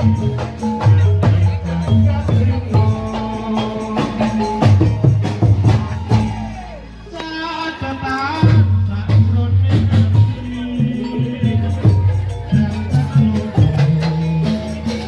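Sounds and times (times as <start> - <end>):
drum strokes: 0.0 - 6.7.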